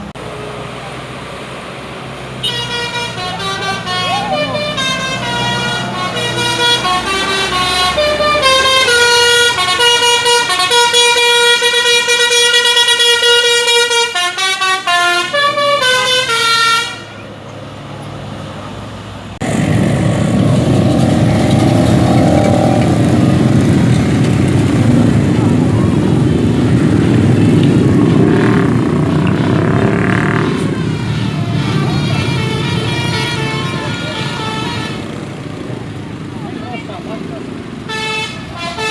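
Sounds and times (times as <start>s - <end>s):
musical bus horn: 2.4s - 17.2s, 30.2s - 35.2s, 37.8s - 38.9s
loud low rumble: 19.4s - 32.6s.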